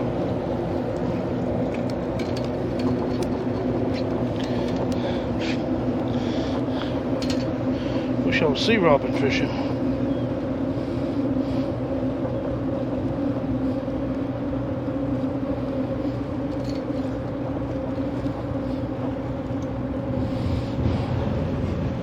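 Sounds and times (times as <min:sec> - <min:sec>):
boat engine droning: 0:00.0 - 0:22.0.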